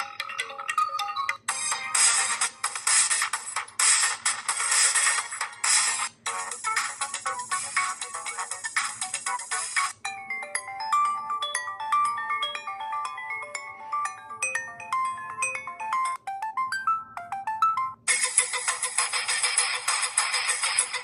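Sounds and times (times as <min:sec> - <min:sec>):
buzzy electronic ringtone: 0:00.0 - 0:21.0
bright short-note ringtone tune: 0:10.0 - 0:18.1.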